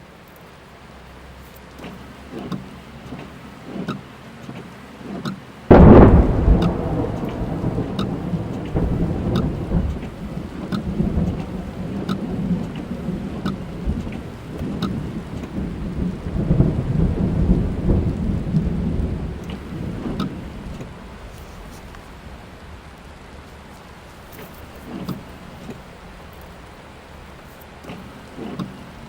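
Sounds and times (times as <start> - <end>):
rain drumming on a car: 0.0 - 29.0
thunderclap and rumble: 5.7 - 23.4.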